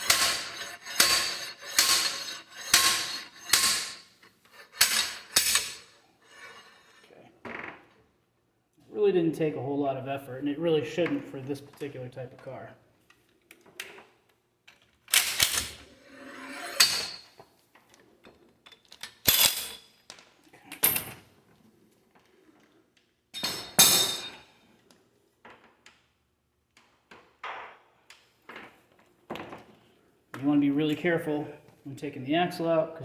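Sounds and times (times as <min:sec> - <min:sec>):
slide hammer metal clanks: 0:00.0 - 0:06.9, 0:15.2 - 0:17.3, 0:23.4 - 0:24.4
tool handling: 0:00.0 - 0:07.0, 0:15.1 - 0:17.3.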